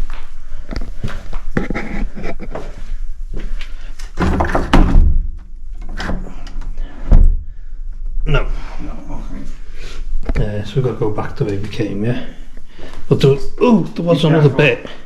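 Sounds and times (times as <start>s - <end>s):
heavy thuds on door: 4.2s - 6.1s
door rattling and knocking: 4.2s - 6.4s.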